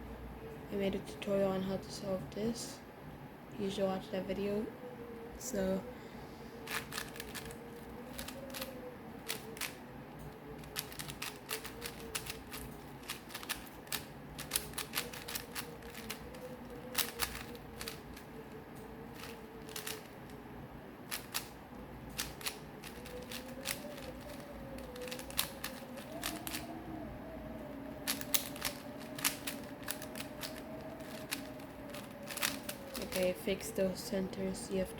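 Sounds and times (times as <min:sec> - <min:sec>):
faint wavering hum: 0:00.0 - 0:34.9
puzzle cube layers clicking: 0:06.7 - 0:09.8, 0:10.6 - 0:18.2, 0:19.1 - 0:20.2, 0:22.2 - 0:26.6, 0:28.0 - 0:33.2.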